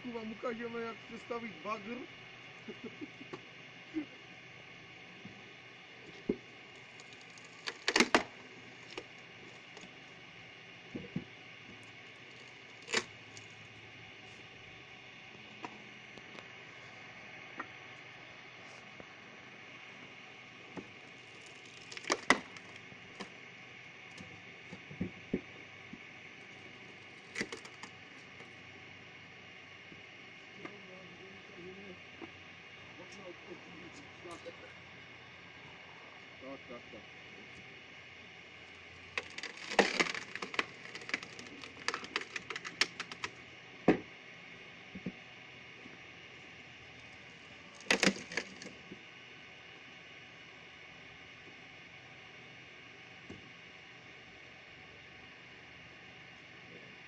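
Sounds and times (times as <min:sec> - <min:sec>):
steady hiss: 0:00.0 - 0:43.6
faint steady hum: 0:00.0 - 0:57.0
wood cracking and splintering: 0:06.7 - 0:10.0, 0:12.0 - 0:13.5, 0:20.8 - 0:23.3, 0:27.2 - 0:27.9, 0:39.1 - 0:43.4, 0:47.7 - 0:48.8.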